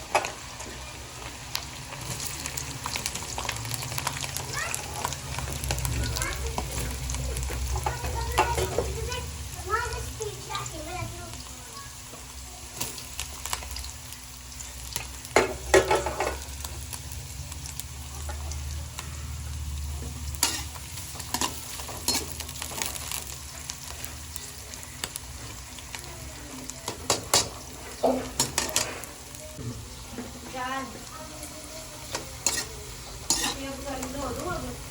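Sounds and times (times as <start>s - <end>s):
food sizzling in hot oil: 0.0s - 34.9s
utensil scraping a pan: 20.0s - 23.0s, 27.0s - 29.2s, 32.1s - 34.2s.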